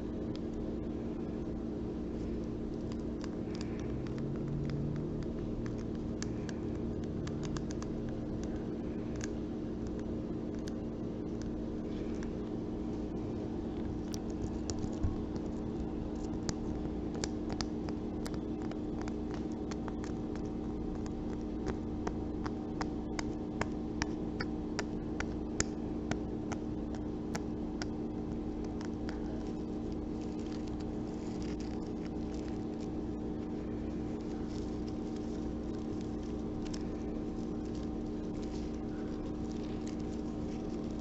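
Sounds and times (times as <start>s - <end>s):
steady low hum: 0.0s - 41.0s.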